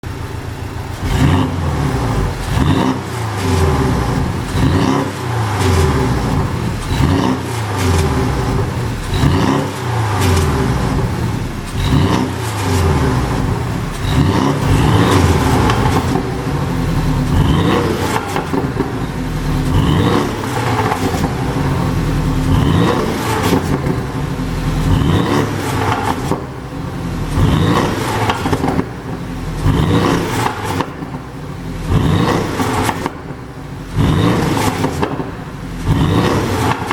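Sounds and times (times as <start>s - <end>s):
exhaust crackles and pops: 0.0s - 36.9s
engine revving in short blips: 0.9s - 26.6s.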